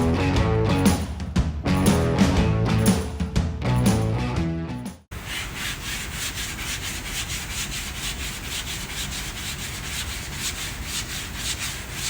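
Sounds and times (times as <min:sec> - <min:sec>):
music: 0:00.0 - 0:05.1
hand sanding strokes: 0:05.1 - 0:12.0.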